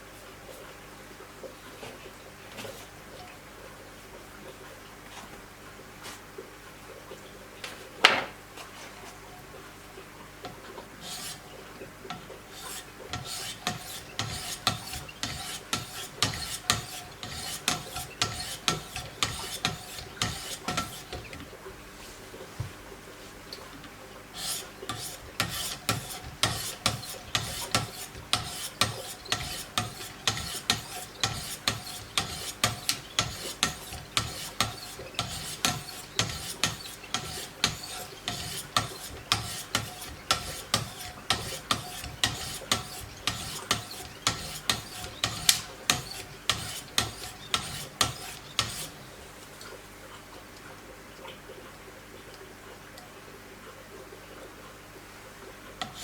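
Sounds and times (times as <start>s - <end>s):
stones rasping on knife blade: 11.0s - 11.4s, 12.1s - 21.4s, 24.4s - 49.0s, 55.8s - 56.0s.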